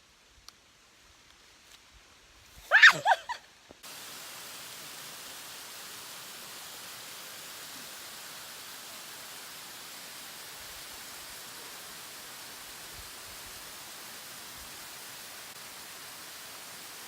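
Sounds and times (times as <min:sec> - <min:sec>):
waterfall rushing: 0:03.8 - 0:17.0.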